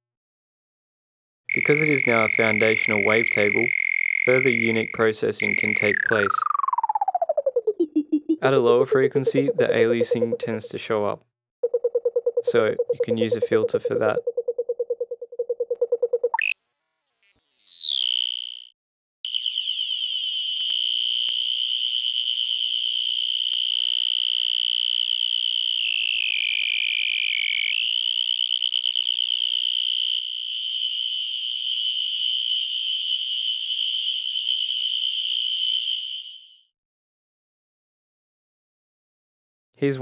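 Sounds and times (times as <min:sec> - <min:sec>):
synthesizer high-pitched hum: 0:04.5 - 0:10.6.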